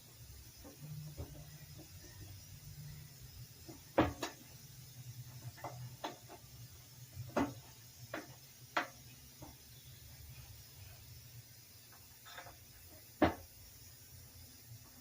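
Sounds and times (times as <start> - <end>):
knocks and clicks of tools: 3.6 - 4.5, 7.2 - 9.6.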